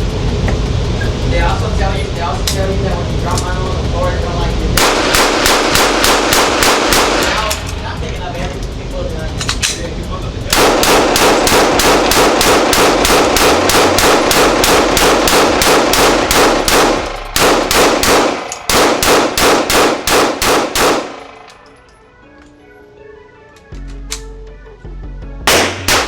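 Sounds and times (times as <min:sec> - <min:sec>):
rapid gunshots: 0:04.8 - 0:07.7, 0:10.5 - 0:21.5, 0:25.5 - 0:26.0.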